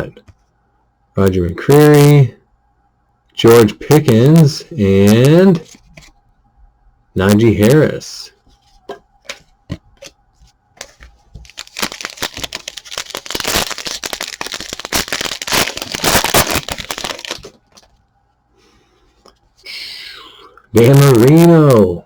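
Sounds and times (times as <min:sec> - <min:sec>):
wrapper tearing and crinkling: 0:10.8 - 0:17.9.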